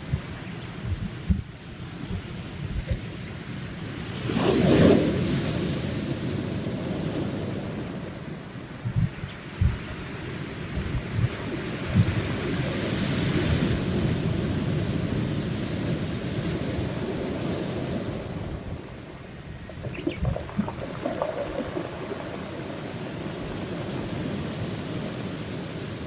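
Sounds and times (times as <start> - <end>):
wind on microphone: 0.0 - 8.0, 8.8 - 25.9
waves washing onto rocks: 16.4 - 26.0.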